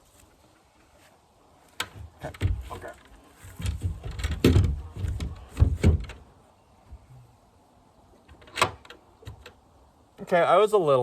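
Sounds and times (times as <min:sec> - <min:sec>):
wooden door knocks and thuds: 0:02.0 - 0:02.9, 0:03.6 - 0:06.2.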